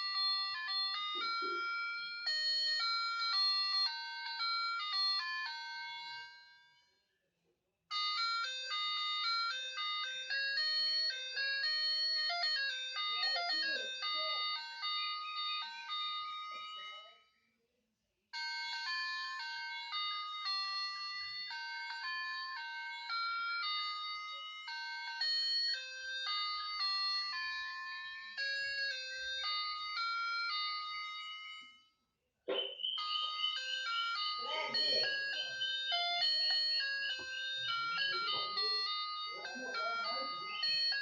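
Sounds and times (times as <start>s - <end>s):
toy playing electronic beeping tunes: 0.0s - 17.7s, 18.3s - 41.0s.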